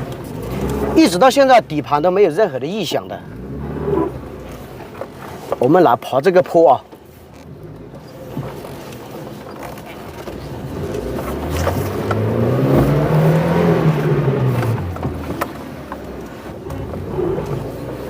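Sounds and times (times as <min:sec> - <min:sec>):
suv engine revving: 0:00.0 - 0:02.1, 0:03.2 - 0:05.5, 0:10.1 - 0:18.0.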